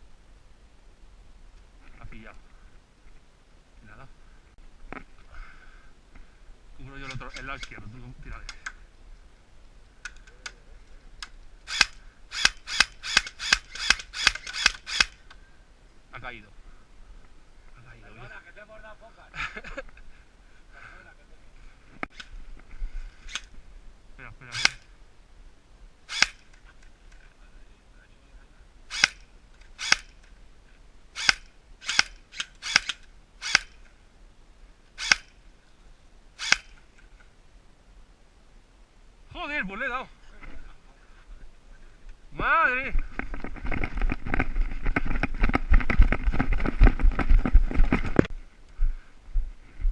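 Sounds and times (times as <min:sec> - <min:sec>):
faint clicks: 0:08.4 - 0:08.8, 0:10.0 - 0:11.5
airsoft gun shots: 0:31.2 - 0:33.8.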